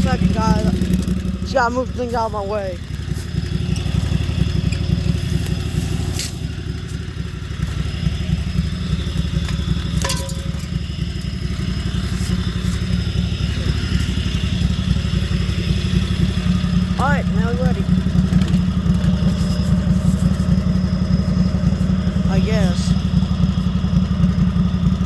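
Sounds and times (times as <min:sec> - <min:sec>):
lawn mower engine running: 0:00.0 - 0:25.0.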